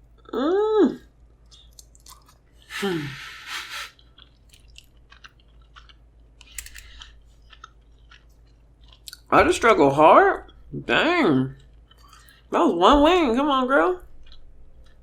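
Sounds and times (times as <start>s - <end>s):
wet chewing and smacking: 1.4s - 2.6s, 4.0s - 9.4s, 11.5s - 12.5s, 14.0s - 15.0s
breathy voiced burst: 2.7s - 3.9s.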